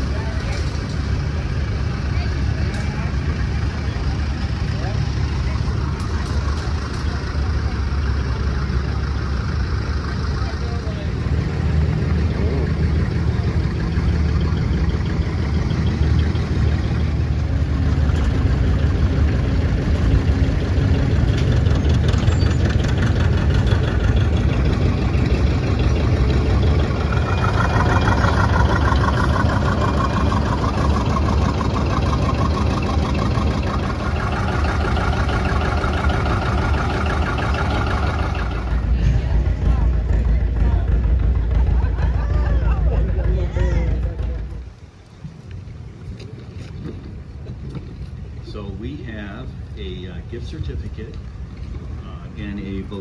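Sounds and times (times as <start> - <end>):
higher engine note: 0.0 - 44.7
tractor engines low drone: 0.0 - 53.0.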